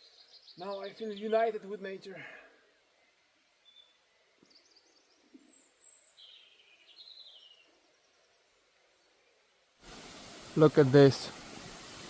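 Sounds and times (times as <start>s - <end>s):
faint songbird calls: 0.0s - 2.1s, 2.7s - 9.5s.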